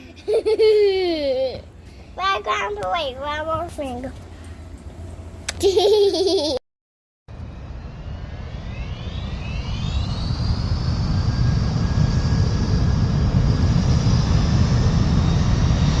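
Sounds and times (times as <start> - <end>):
low rumble: 7.3 - 16.0
machine whine rising in pitch: 7.3 - 16.0.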